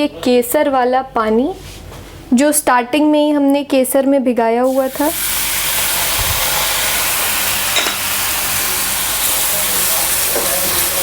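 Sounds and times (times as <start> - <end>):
food sizzling in hot fat: 4.6 - 11.0
spoon knock: 7.7 - 8.1.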